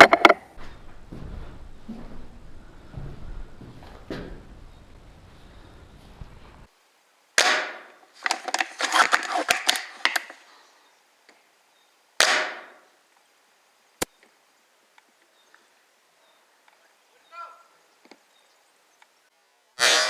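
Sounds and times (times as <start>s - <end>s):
airsoft gun shots: 7.4s - 8.0s, 12.2s - 12.8s.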